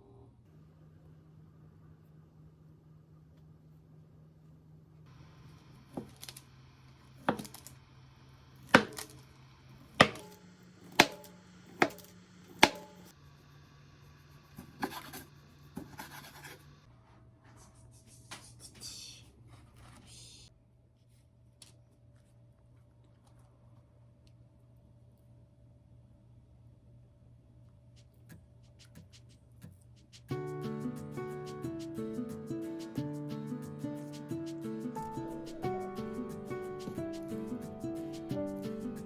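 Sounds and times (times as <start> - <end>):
knife chopping on cutting board: 5.9 - 6.3, 7.2 - 7.6, 8.6 - 9.2, 9.9 - 13.1, 14.6 - 15.2.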